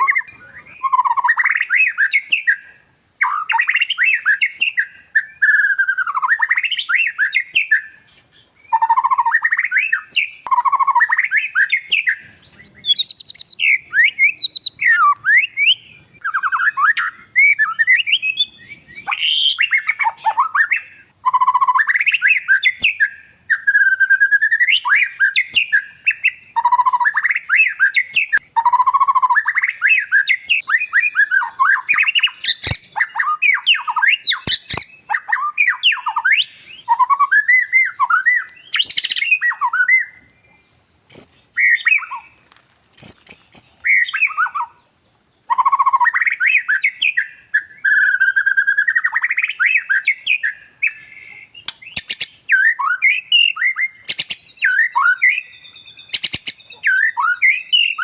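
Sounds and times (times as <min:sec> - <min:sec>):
songbird singing: 0:00.0 - 0:58.0
sharp clicks: 0:34.4 - 0:34.9.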